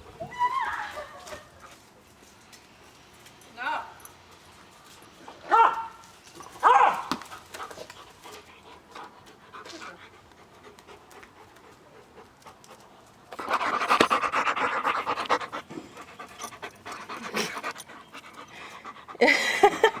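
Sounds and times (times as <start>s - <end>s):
dog panting heavily: 7.3s - 20.0s.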